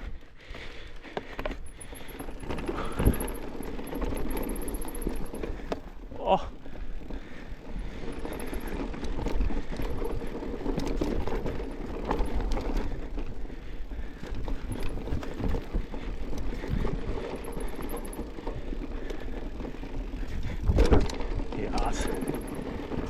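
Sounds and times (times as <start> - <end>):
bike knocking and rattling: 0.0 - 23.0
bike tyres rumbling over dirt: 0.0 - 23.0
wind buffeting microphone: 2.4 - 23.0.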